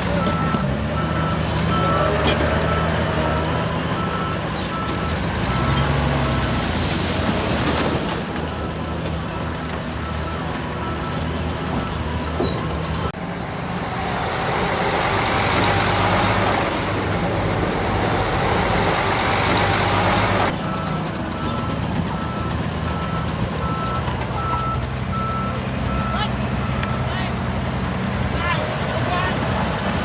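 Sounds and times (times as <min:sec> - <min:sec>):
reversing alarm beeping: 0:00.0 - 0:06.5, 0:19.9 - 0:27.2
bulldozer diesel engine running: 0:00.0 - 0:30.0.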